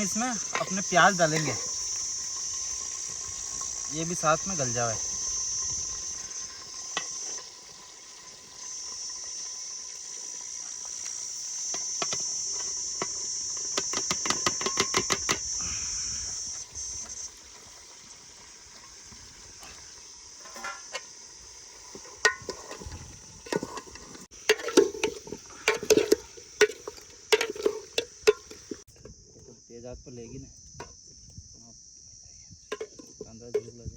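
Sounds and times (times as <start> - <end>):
high insect chirring: 0.0 - 23.6
food cooking in a pot: 0.0 - 29.2
ladle knocking against pot: 13.8 - 15.4
metal ladle stirring and scraping: 21.9 - 28.8.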